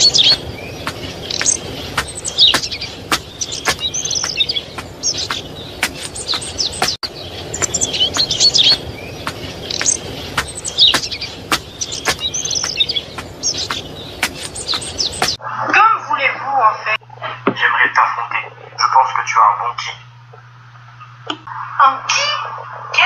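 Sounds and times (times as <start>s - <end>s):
birds chirping: 0.0s - 15.4s
steady background noise: 0.0s - 23.0s.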